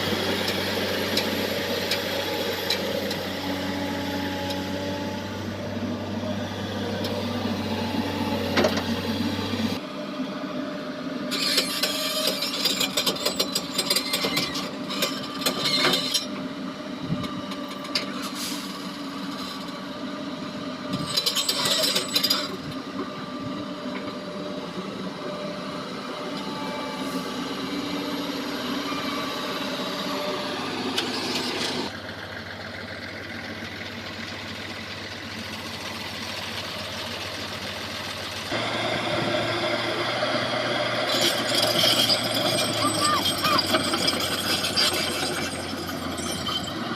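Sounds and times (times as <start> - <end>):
diesel engine running: 0.0 - 46.9
metal clanking and rattling: 20.9 - 22.6, 41.1 - 46.9.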